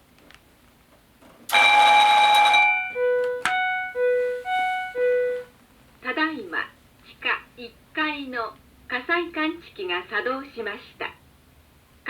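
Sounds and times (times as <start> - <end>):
attention chime tones: 1.5 - 5.5
fire alarm bell ringing: 1.5 - 5.5.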